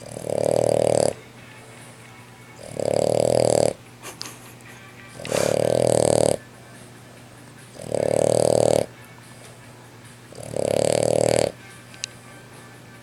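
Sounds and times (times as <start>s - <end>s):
dog snoring loudly: 0.0s - 1.3s, 2.6s - 3.8s, 5.2s - 6.5s, 7.7s - 9.0s, 10.3s - 11.6s.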